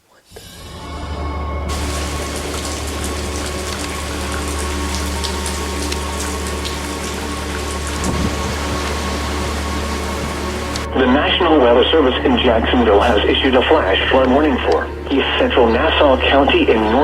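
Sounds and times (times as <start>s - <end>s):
faint steady hum: 0.1s - 17.0s
low rumble: 0.4s - 17.0s
heavy rain falling: 1.7s - 17.0s.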